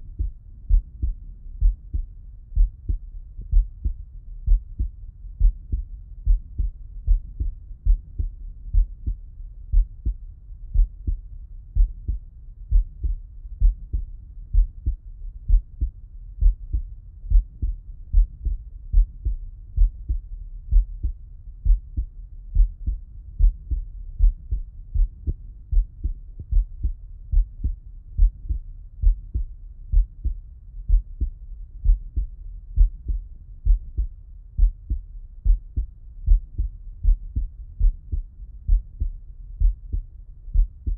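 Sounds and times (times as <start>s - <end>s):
heartbeat through stethoscope: 0.0s - 40.9s.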